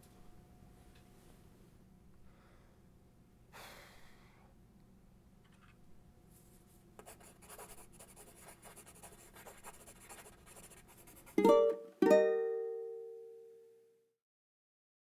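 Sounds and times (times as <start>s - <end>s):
faint scratching: 5.4s - 11.4s
plucked string chords: 11.4s - 13.6s.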